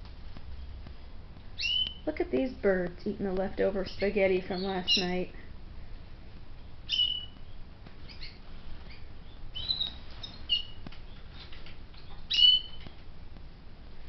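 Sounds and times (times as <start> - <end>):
canaries chirping: 1.5 - 2.1, 3.7 - 5.4, 6.8 - 13.0.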